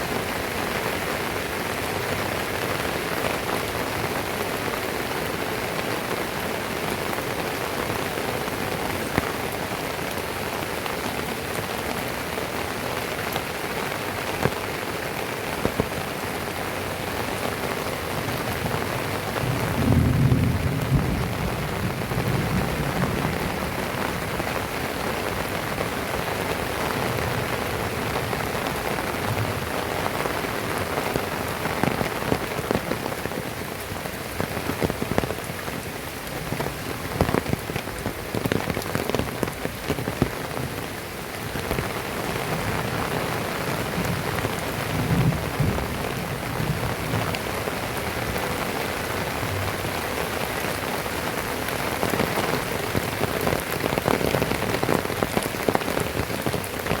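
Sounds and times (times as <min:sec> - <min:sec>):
heavy rain falling: 0:00.0 - 0:57.0
loud raindrop hits: 0:19.2 - 0:25.2, 0:41.6 - 0:50.8.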